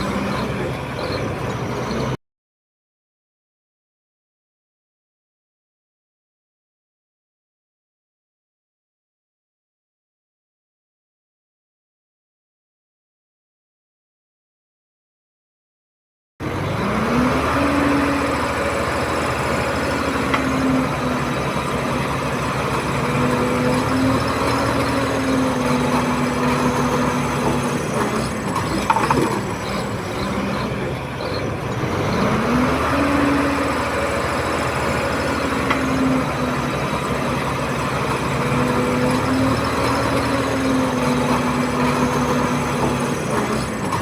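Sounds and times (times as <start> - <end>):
bulldozer diesel engine revving: 0.0 - 2.2, 16.4 - 44.0.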